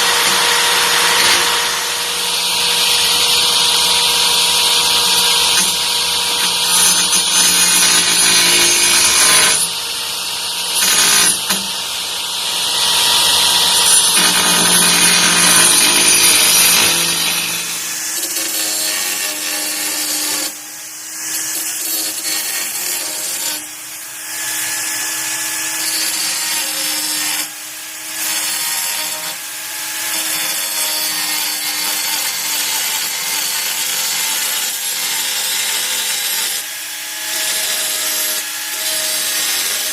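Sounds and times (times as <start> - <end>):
angle grinder grinding: 0.0 - 23.9.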